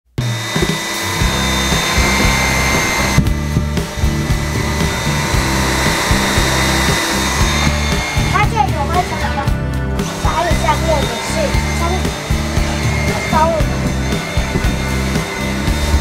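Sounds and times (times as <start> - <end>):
background music with bass: 0.1 - 16.0
handheld vacuum running: 0.2 - 16.0.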